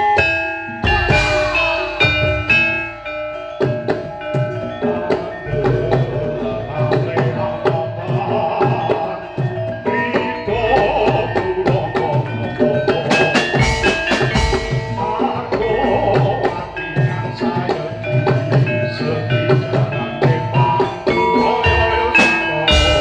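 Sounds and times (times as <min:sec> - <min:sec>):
hand drum strokes: 0:00.0 - 0:10.2, 0:10.8 - 0:23.0
ringing metallophone notes: 0:00.0 - 0:23.0
cymbal crash: 0:00.2 - 0:03.8, 0:22.2 - 0:23.0.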